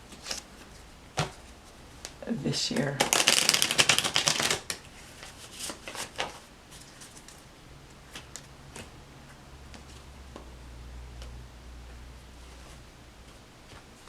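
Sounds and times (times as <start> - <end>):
cards being shuffled: 0.1 - 7.4.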